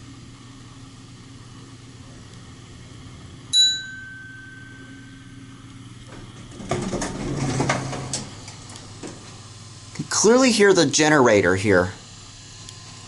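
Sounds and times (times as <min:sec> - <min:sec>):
elevator motor hum: 0:00.0 - 0:13.0
elevator chime ding: 0:03.5 - 0:05.7
elevator doors sliding: 0:06.2 - 0:09.3.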